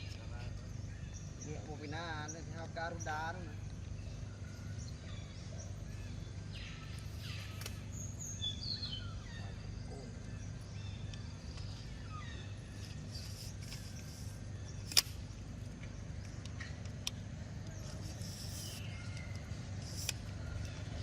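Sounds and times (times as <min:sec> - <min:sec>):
steady low hum: 0:00.0 - 0:21.0
bird chirps and whistled calls: 0:04.8 - 0:15.0
sharp click: 0:12.9 - 0:15.2, 0:16.2 - 0:20.3.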